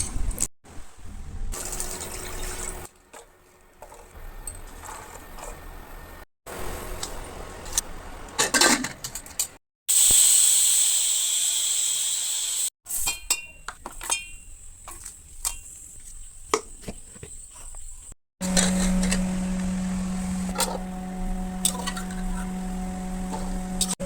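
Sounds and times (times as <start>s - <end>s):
sizzling hiss: 9.9s - 12.7s
utensils clinking against cookware: 12.9s - 15.8s.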